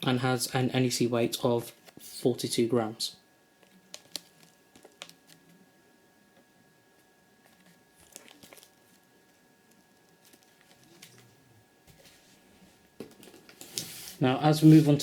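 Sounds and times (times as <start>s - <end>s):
packaging crinkling and tapping: 3.6s - 5.5s, 7.4s - 11.3s.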